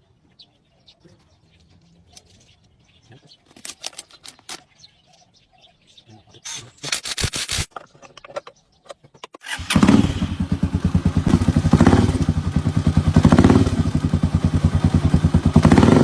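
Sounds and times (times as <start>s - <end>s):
motorcycle engine revving: 9.4s - 16.0s.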